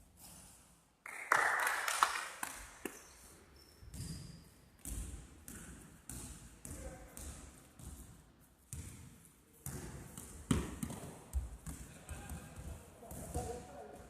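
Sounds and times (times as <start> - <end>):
basketball dribbling on gym floor: 4.8 - 13.5.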